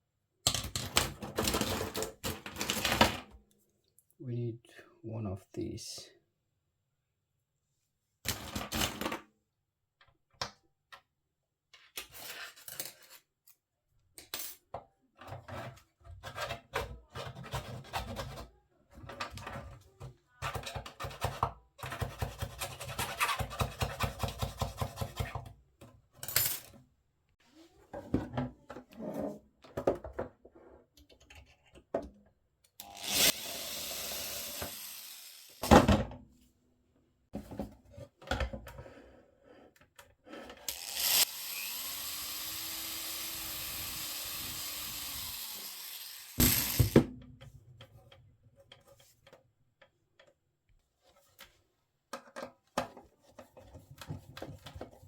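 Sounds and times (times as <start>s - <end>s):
small power tool motor: 32.8s - 35.7s, 40.7s - 47.0s.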